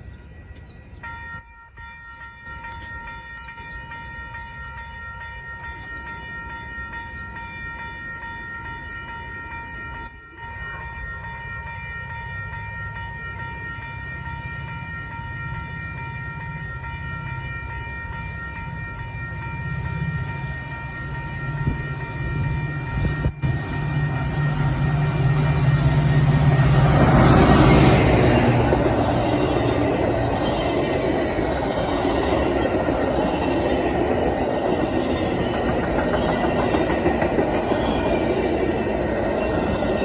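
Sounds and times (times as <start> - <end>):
high-pitched train tones: 0.0 - 40.0
diesel locomotive engine rumble: 18.0 - 40.0.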